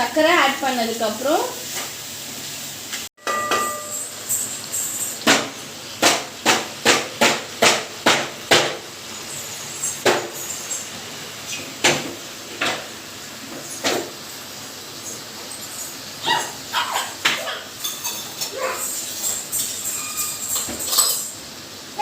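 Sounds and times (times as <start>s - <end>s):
metal ladle knocking on pan: 3.2s - 4.0s.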